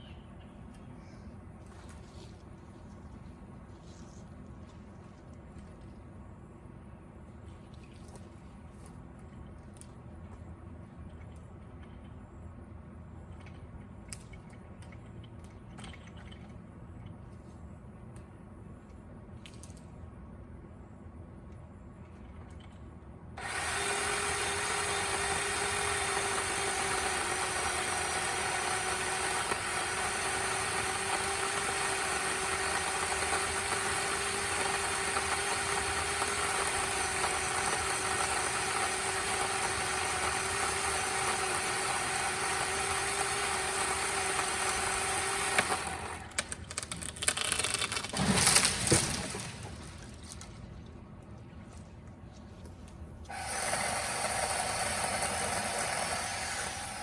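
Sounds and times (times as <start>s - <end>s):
electric chainsaw cutting wood: 23.4s - 49.4s, 53.3s - 57.0s.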